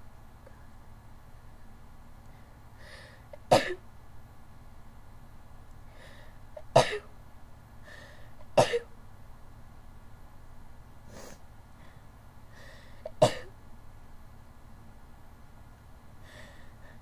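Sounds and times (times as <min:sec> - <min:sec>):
quick in-breath: 0:02.3 - 0:03.3, 0:05.9 - 0:06.4, 0:07.8 - 0:08.4, 0:11.1 - 0:13.1, 0:16.2 - 0:17.0.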